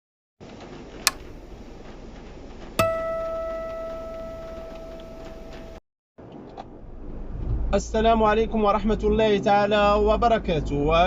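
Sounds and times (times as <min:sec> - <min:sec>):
bell-like chime ringing: 0:02.8 - 0:05.8.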